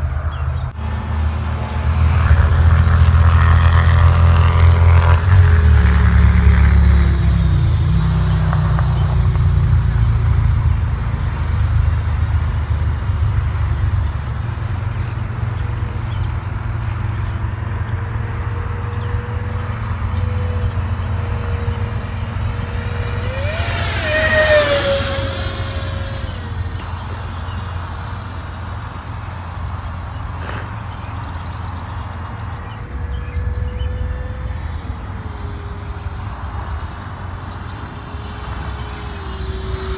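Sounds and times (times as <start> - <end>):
electric ducted fan whining: 0.0 - 39.9
steady low rumble: 32.6 - 39.9.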